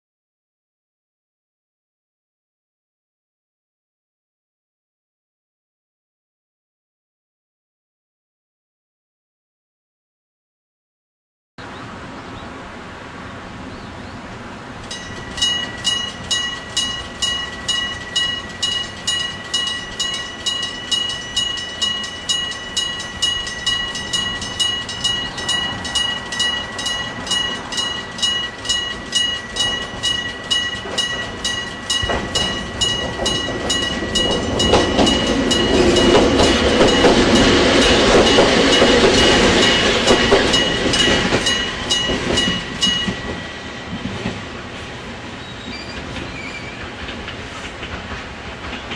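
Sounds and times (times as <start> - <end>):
train rumble: 11.7 - 48.9
level-crossing bell ringing: 14.9 - 43.6.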